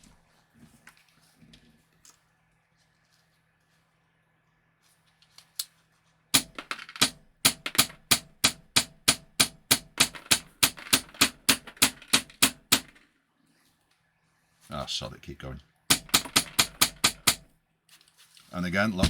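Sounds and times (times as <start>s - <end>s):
airsoft rifle shots: 6.4s - 13.0s, 15.9s - 17.5s.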